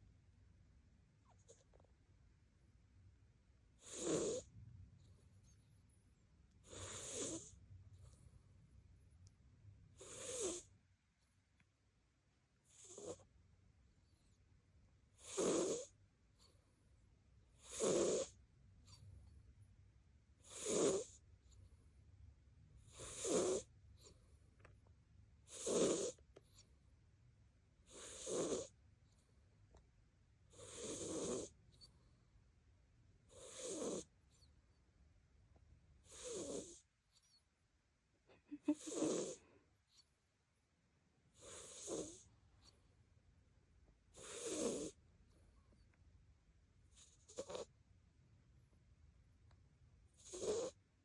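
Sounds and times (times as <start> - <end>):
cat snoring: 3.8 - 5.6, 6.6 - 8.4, 9.9 - 10.7, 12.6 - 13.3, 15.2 - 16.6, 17.5 - 19.0, 20.4 - 21.2, 22.8 - 24.3, 25.4 - 26.6, 27.8 - 28.8, 30.5 - 31.9, 33.3 - 34.5, 36.0 - 37.3, 38.6 - 40.0, 41.3 - 42.8, 44.1 - 45.0, 46.9 - 47.8, 50.1 - 50.8.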